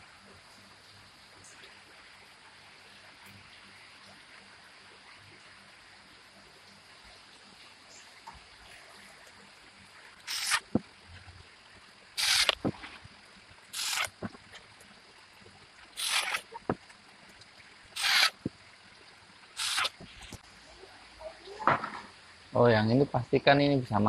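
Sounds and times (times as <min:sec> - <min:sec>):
plastic parts scraping: 0:10.3 - 0:10.8, 0:12.2 - 0:12.9, 0:13.8 - 0:14.4, 0:16.0 - 0:16.8, 0:18.0 - 0:18.4, 0:19.6 - 0:20.4
sharp plastic clicks: 0:10.3 - 0:10.8, 0:12.2 - 0:12.8, 0:19.6 - 0:20.4.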